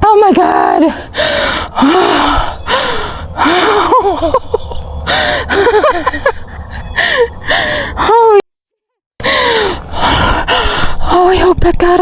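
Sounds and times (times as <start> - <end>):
woman gasping and panting: 7.0 - 8.1, 9.2 - 11.0.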